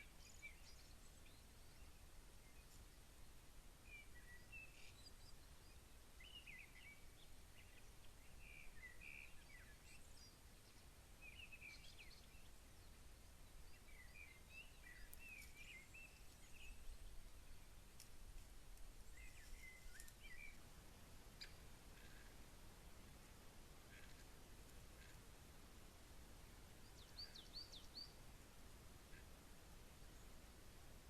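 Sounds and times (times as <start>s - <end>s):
faint bird chirps: 0.0s - 3.2s, 3.8s - 18.1s, 19.0s - 20.6s, 21.3s - 23.2s, 23.8s - 25.3s, 26.7s - 28.3s
low rumble and hiss: 0.0s - 31.0s.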